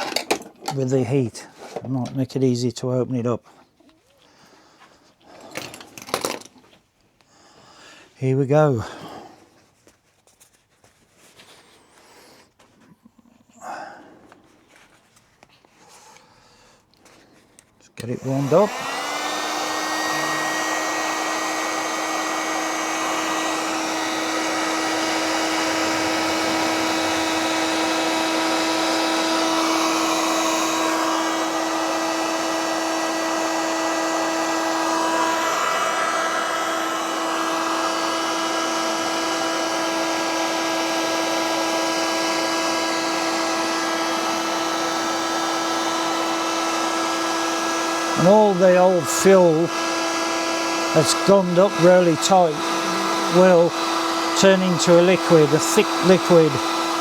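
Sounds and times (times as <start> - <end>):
heat gun humming and blowing air: 18.0 - 57.0.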